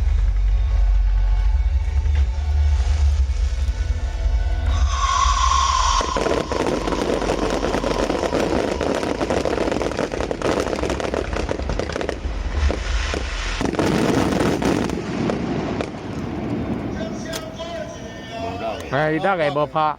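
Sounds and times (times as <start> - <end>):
fireworks crackling and popping: 0.0 - 18.9
high sliding tone: 4.0 - 10.6.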